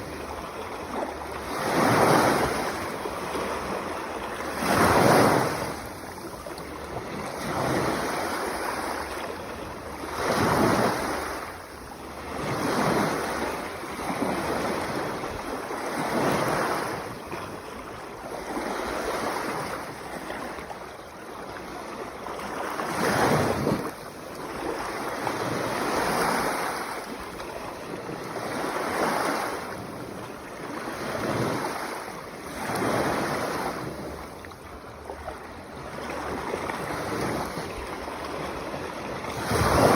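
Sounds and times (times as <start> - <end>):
small waves washing onto shore: 0.0 - 39.9
wind on microphone: 35.7 - 39.9.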